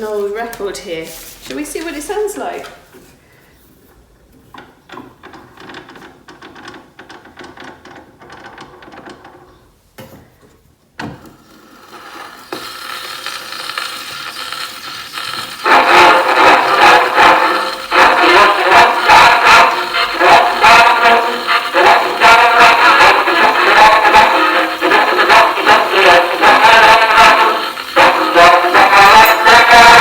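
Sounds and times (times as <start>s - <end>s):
record surface hiss: 0.0s - 30.0s
gramophone mechanical clicks and rattles: 4.3s - 9.6s
music from record: 12.0s - 30.0s.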